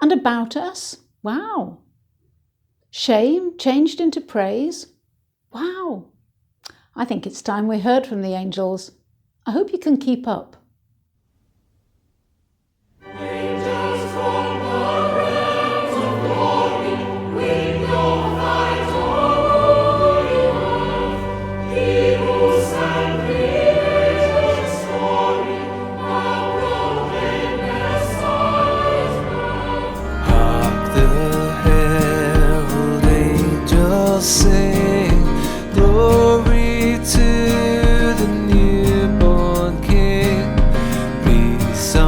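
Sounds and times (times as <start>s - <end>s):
choir singing a carol: 13.0s - 36.6s.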